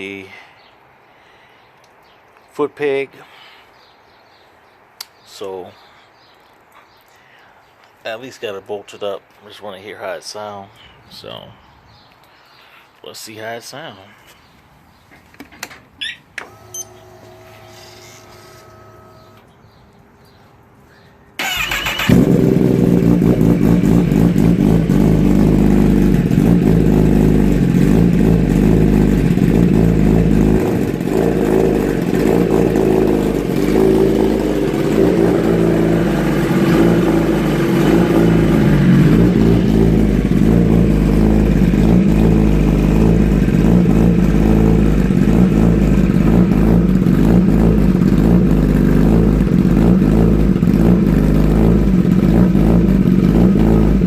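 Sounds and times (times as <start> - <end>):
motorcycle engine running loud: 21.4 - 54.0.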